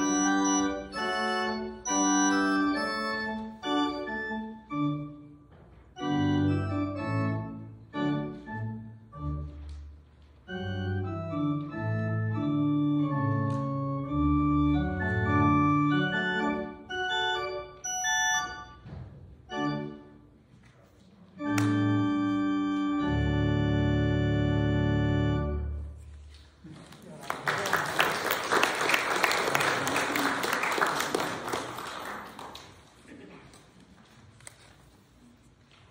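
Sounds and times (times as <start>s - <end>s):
church organ playing chords: 0.0s - 5.4s, 6.0s - 9.7s, 10.4s - 18.8s, 19.5s - 20.3s, 21.4s - 26.0s.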